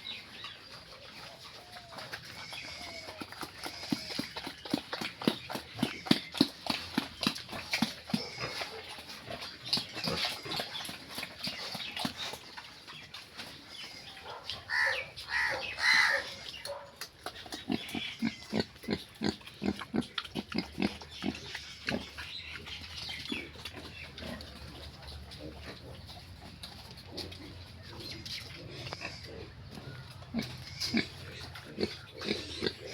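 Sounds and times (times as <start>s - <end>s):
pigs grunting: 0.7s - 12.4s, 14.0s - 32.9s
pigs squealing: 1.2s - 4.7s, 8.1s - 11.1s, 14.5s - 16.7s, 17.7s - 22.4s, 27.2s - 32.9s.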